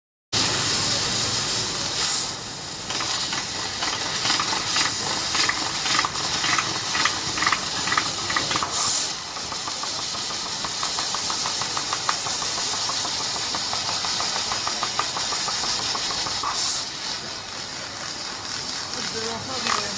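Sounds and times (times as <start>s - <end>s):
gas blasts: 0.4s - 19.9s
gas hissing: 0.4s - 19.9s
machine ticking: 2.9s - 16.6s.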